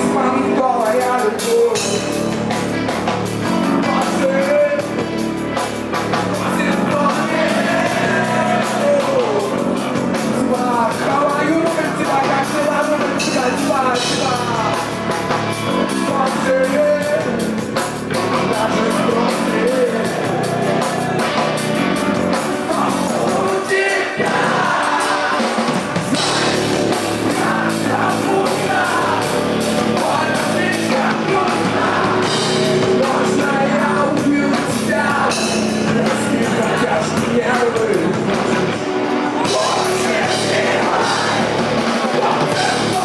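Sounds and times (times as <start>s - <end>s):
person singing: 0.0s - 2.1s, 3.4s - 43.0s
drums: 0.0s - 43.0s
rock band playing live: 0.0s - 43.0s.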